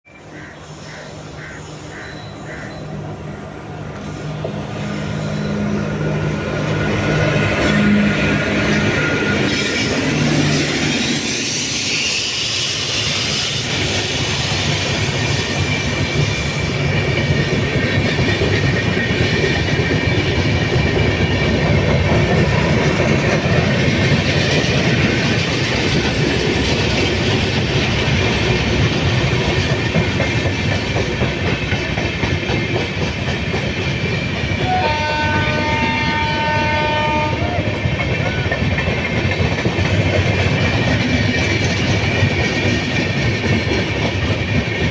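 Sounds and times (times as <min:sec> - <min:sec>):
train wheels clattering on rails: 0:03.9 - 0:44.9
locomotive horn blast: 0:06.9 - 0:09.5, 0:34.6 - 0:37.7.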